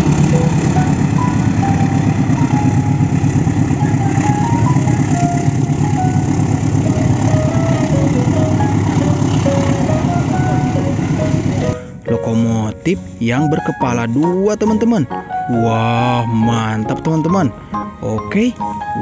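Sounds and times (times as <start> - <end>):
motor drone with flutter: 0.0 - 11.8
faint melody of short notes: 0.0 - 19.0.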